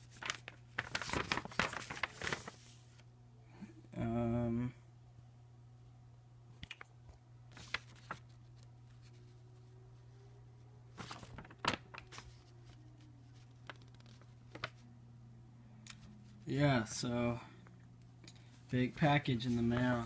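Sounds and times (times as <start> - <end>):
package paper rustling: 0.0 - 3.0, 7.5 - 9.4, 10.9 - 14.9, 18.4 - 20.0
steady low hum: 0.0 - 20.0.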